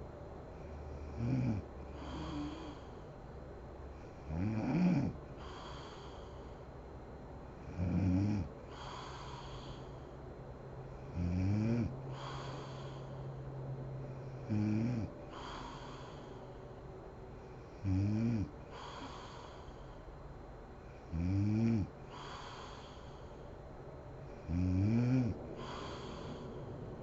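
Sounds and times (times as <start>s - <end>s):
soft airy breath: 0.5s - 3.2s, 5.2s - 7.7s, 8.4s - 11.2s, 11.8s - 17.8s, 18.4s - 21.2s, 21.8s - 24.5s, 25.2s - 27.0s
woman snoring: 0.6s - 3.0s, 4.2s - 6.3s, 7.6s - 10.0s, 11.1s - 13.1s, 14.5s - 16.4s, 17.8s - 19.9s, 21.0s - 23.3s, 24.4s - 26.5s.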